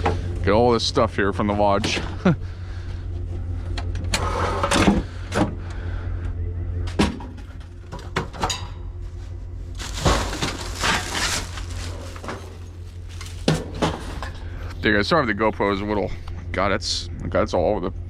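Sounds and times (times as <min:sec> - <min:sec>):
steady low hum: 0:00.0 - 0:18.0
objects knocking and clunking: 0:06.9 - 0:08.8, 0:09.8 - 0:14.6
rustling: 0:09.0 - 0:14.6.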